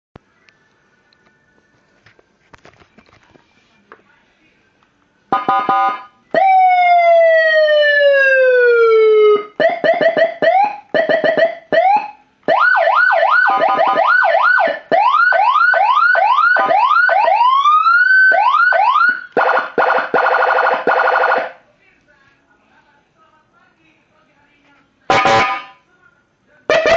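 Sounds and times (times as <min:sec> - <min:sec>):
electronic vehicle siren: 0:05.3 - 0:21.6, 0:25.1 - 0:25.7.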